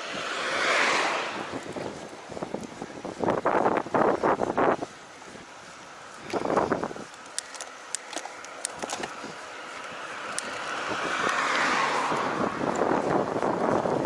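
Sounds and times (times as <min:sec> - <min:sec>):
car passing: 0:00.0 - 0:02.9, 0:08.3 - 0:14.0
sharp ticks: 0:05.7 - 0:11.6.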